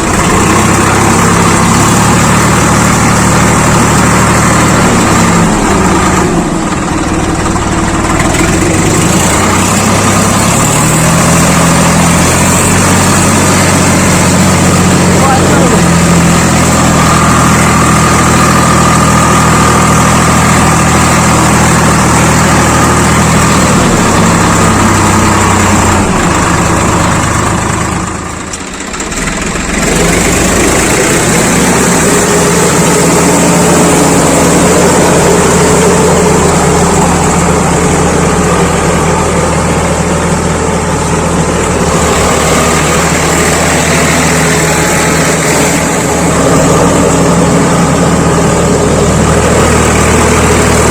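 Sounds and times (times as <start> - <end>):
tractor diesel engine running: 0.0 - 50.9.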